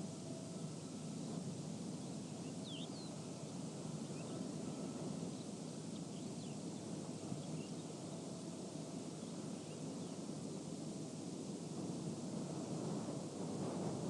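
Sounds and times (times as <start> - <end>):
distant machinery hum: 0.0 - 14.0
bird chirps: 2.0 - 3.2
deep wind noise: 9.8 - 14.0.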